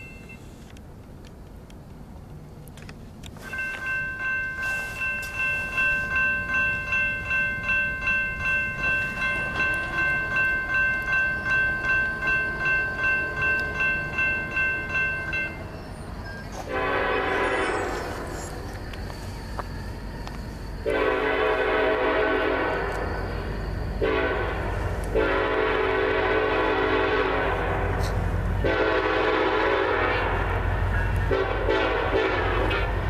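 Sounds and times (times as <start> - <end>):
locomotive air horn: 16.6 - 18.3, 20.8 - 23.1, 24.0 - 30.6, 31.3 - 33.0.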